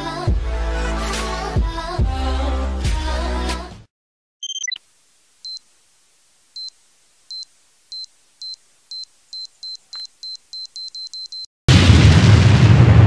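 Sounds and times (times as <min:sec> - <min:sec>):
electronic chirp: 0:04.4 - 0:04.8, 0:05.4 - 0:05.6, 0:06.6 - 0:11.5
high electronic beeps: 0:04.4 - 0:04.8, 0:07.3 - 0:11.5.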